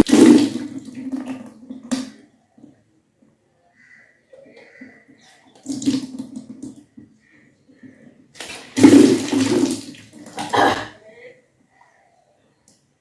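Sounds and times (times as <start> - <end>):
water gushing from mouth: 0.0 - 2.2, 8.4 - 10.9
person retching: 8.8 - 11.0.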